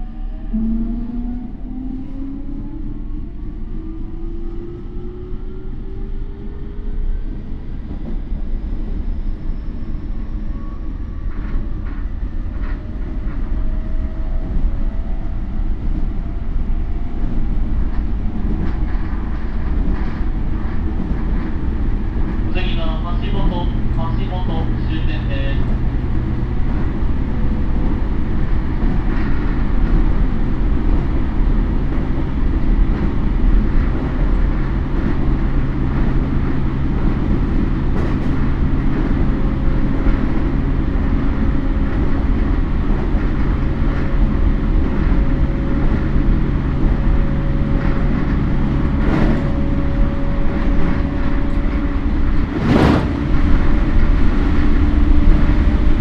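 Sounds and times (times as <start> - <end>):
train wheels rumbling on rail: 0.0 - 56.0
loud rush: 52.4 - 54.0.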